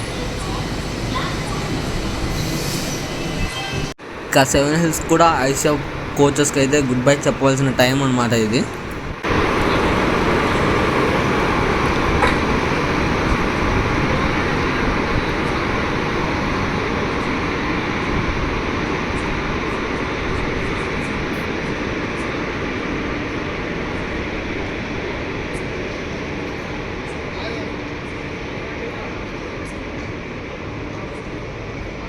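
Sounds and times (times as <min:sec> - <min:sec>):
train wheels rumbling on track: 0:00.0 - 0:32.0.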